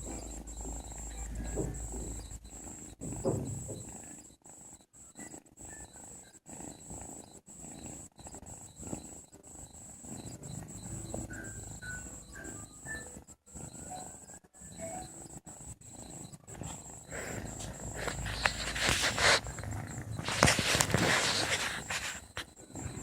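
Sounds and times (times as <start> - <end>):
cat snoring: 0.0 - 23.0.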